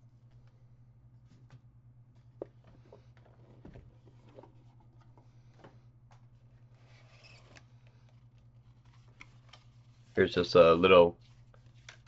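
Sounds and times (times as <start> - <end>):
low electrical hum: 0.0 - 12.0
cardboard and paper handling: 6.5 - 10.3, 11.2 - 12.0.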